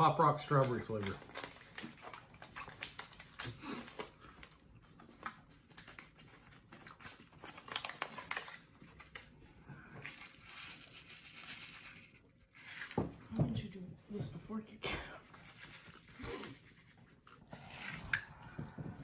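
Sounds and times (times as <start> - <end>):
candy wrapper crinkling and tearing: 0.2 - 9.4, 10.0 - 13.0.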